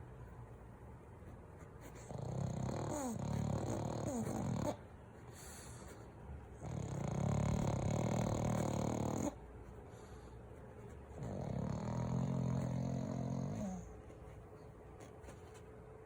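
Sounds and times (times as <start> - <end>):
dog snoring: 2.0 - 5.9, 6.6 - 9.4, 11.2 - 13.9.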